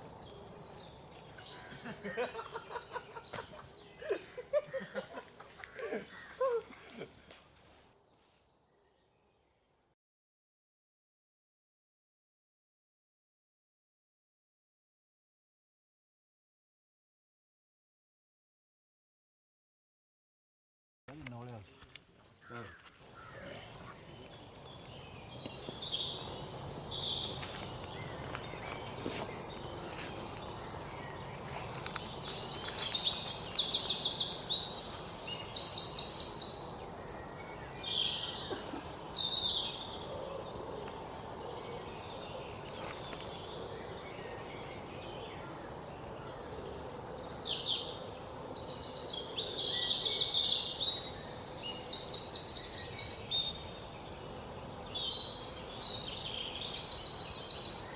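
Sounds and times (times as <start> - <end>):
birds chirping and calling: 0.0 - 4.6, 22.4 - 57.9.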